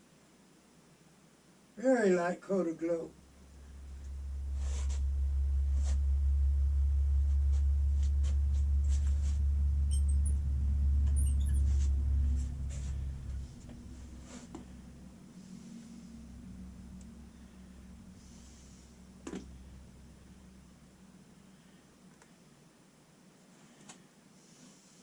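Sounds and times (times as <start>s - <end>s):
low machine hum: 2.8s - 23.0s
brief high squeaks: 9.8s - 14.7s.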